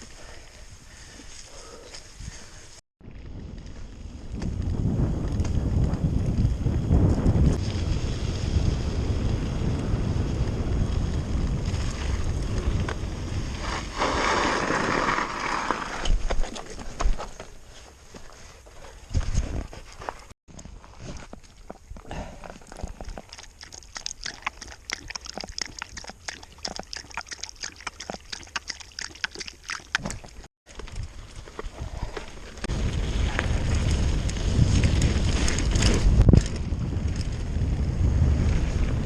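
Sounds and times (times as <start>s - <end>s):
wind buffeting microphone: 2.1s - 14.3s, 30.0s - 39.0s
bike clicks and rattles: 30.7s - 39.0s.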